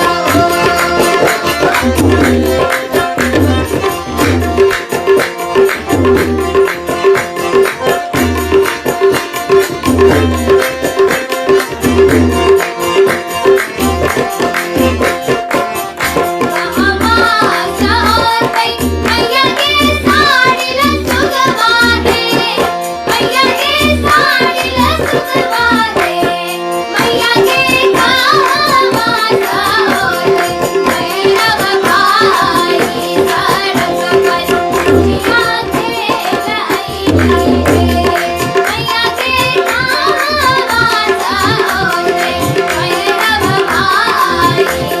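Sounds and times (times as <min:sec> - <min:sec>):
person singing: 0:00.0 - 0:03.7.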